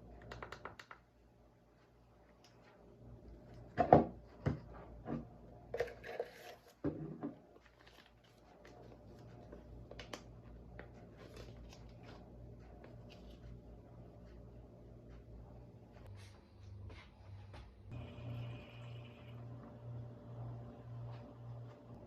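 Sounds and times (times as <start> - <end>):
faint low hum: 7.1 - 22.0.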